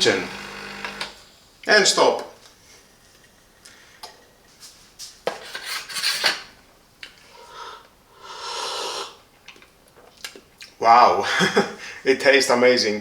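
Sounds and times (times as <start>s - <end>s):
rustling noise: 4.4s - 6.5s.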